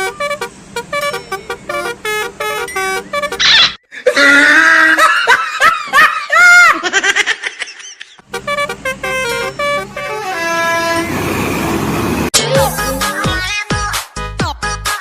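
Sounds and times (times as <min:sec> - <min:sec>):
multi-tone bus air horn tune: 0:00.0 - 0:03.5, 0:08.2 - 0:13.6.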